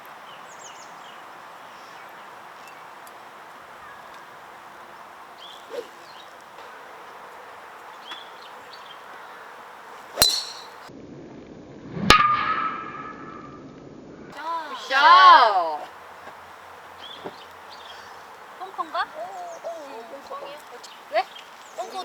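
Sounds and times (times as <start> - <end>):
bird chirps: 0.3 - 3.0, 5.3 - 9.6, 10.2 - 10.9, 16.8 - 22.0
golf club striking ball: 5.4 - 6.7, 10.1 - 10.9.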